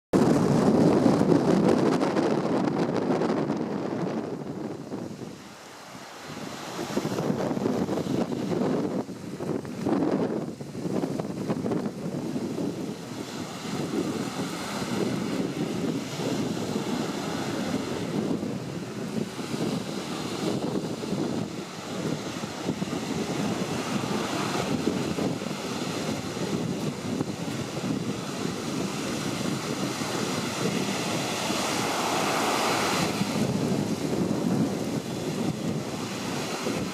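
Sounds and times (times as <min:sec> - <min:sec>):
wind buffeting microphone: 0:00.1 - 0:36.9
surf breaking on a beach: 0:00.2 - 0:36.9.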